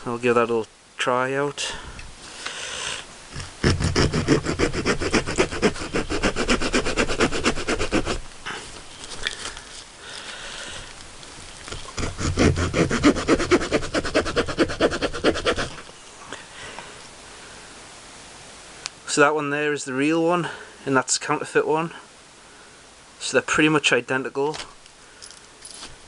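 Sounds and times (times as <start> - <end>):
small saw cutting wood: 3.3 - 8.2, 11.9 - 15.9.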